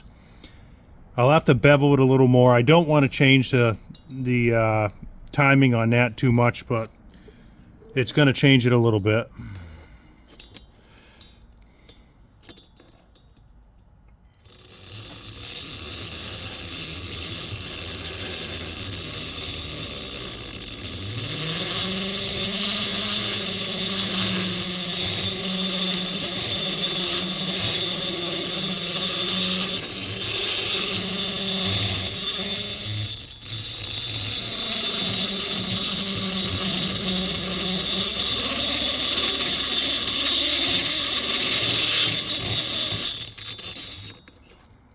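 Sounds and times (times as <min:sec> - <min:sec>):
air-powered die grinder grinding: 0:14.4 - 0:44.7.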